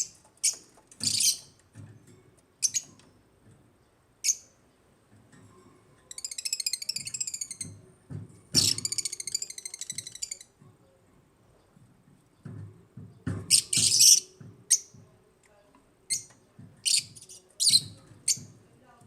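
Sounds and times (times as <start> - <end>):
lovebirds chirping and twittering: 0.0 - 1.9, 2.6 - 3.1, 6.1 - 7.8, 8.5 - 10.5, 11.6 - 15.0, 16.1 - 18.6.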